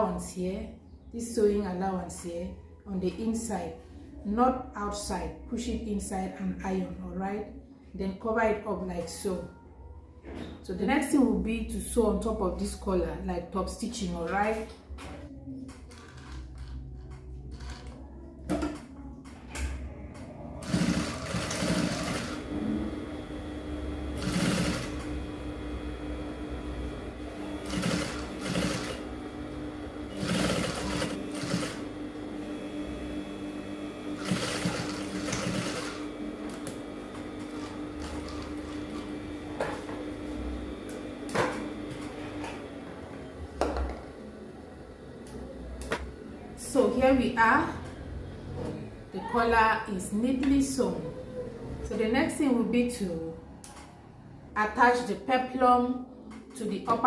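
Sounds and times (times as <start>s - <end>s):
sewing machine running: 20.5s - 39.5s.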